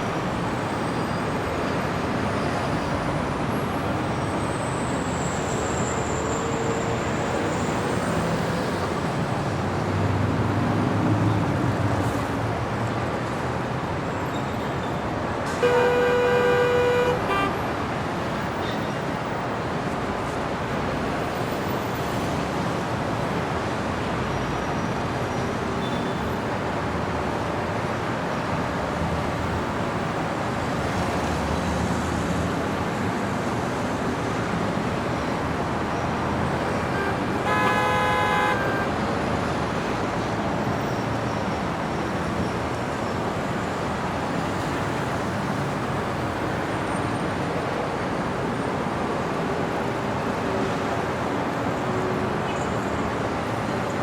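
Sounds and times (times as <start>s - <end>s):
city street traffic: 0.0s - 54.0s
car horn: 15.6s - 17.7s, 36.7s - 39.0s.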